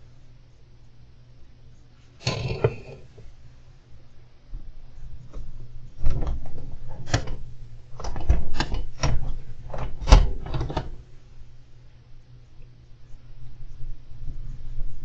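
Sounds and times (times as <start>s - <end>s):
hamster clicks and knocks in cage: 5.3s - 11.1s.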